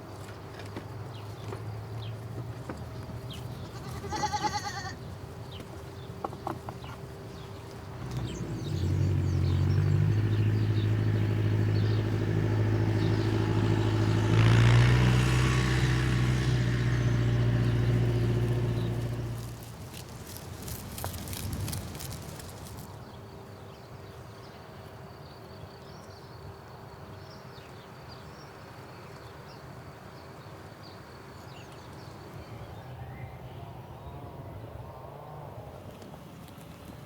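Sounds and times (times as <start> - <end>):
vehicle engine humming: 0.8 - 23.1
animal bleating: 3.6 - 5.0.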